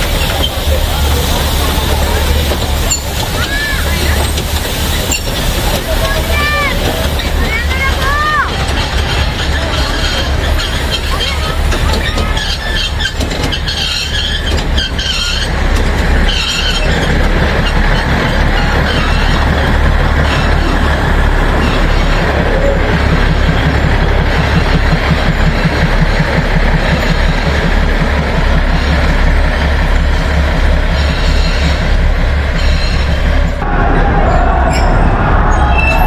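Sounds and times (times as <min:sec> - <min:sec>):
train rumbling: 0:00.0 - 0:36.0
train wheels squealing: 0:08.8 - 0:15.6, 0:16.2 - 0:20.9, 0:30.1 - 0:31.9, 0:32.6 - 0:33.2, 0:34.6 - 0:36.0.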